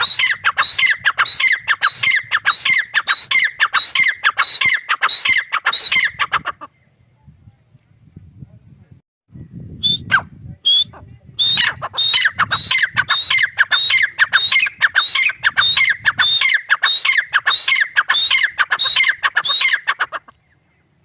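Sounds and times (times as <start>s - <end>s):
francolin calling: 11.4s - 20.8s.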